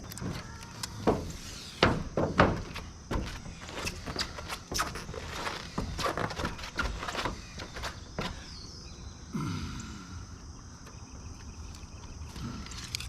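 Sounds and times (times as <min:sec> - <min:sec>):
roofing membrane crinkling: 0:00.0 - 0:08.8.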